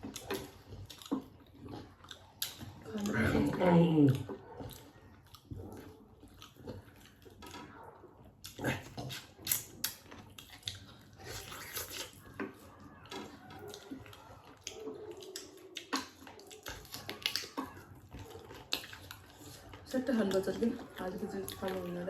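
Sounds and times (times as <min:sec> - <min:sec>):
people chewing and biting food: 0:00.0 - 0:22.0
wet mouth noises: 0:08.3 - 0:21.9.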